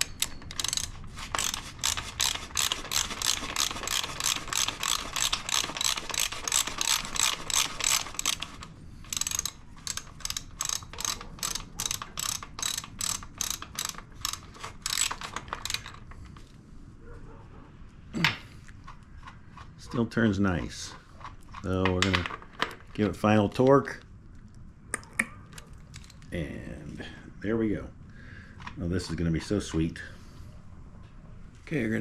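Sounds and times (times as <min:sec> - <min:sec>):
ratchet wrench clicking: 0:00.0 - 0:16.1.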